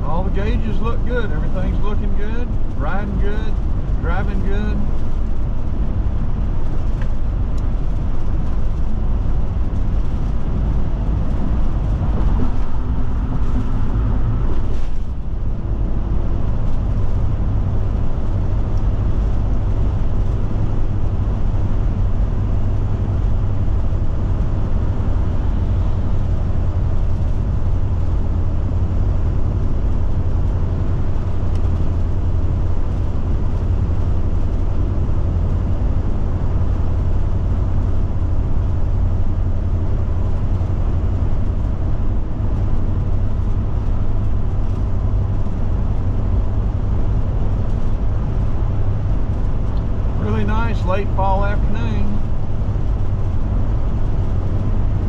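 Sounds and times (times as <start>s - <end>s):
driver talking: 0.0s - 5.0s, 50.0s - 52.3s
engine and road noise hum: 0.0s - 55.0s.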